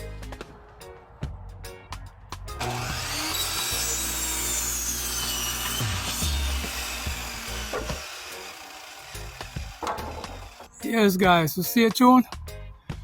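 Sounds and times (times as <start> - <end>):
electric saw cutting wood: 2.6 - 10.8.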